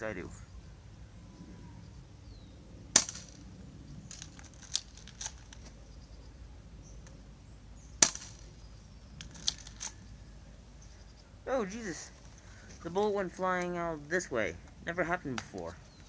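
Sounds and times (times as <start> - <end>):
airsoft pistol shots: 2.9 - 3.5, 8.0 - 8.5.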